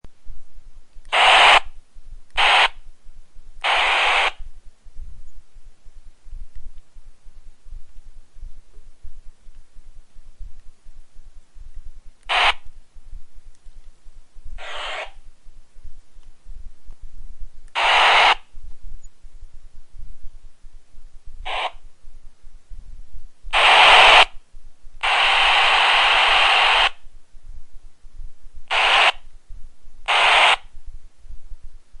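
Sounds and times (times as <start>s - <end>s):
pager buzzing: 1.1s - 1.7s, 2.3s - 2.8s, 3.6s - 4.4s, 12.2s - 12.7s, 14.6s - 15.2s, 17.7s - 18.4s, 21.5s - 21.8s, 23.6s - 24.3s, 25.0s - 27.0s, 28.7s - 29.2s, 30.0s - 30.7s.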